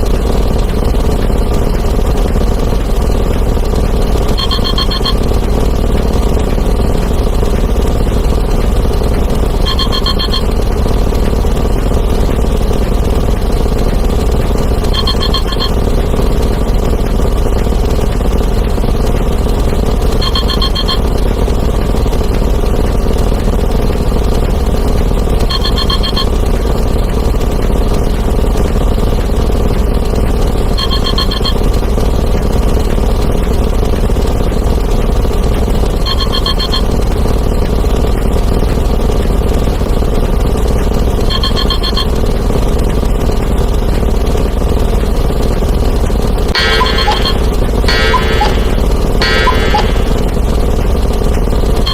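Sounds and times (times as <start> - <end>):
continuous engine-like rumble: 0.0 - 51.9
trilled electronic ring: 4.2 - 5.3, 9.6 - 10.5, 14.9 - 15.8, 20.2 - 21.0, 25.5 - 26.3, 30.8 - 31.6, 36.1 - 36.9, 46.6 - 50.5.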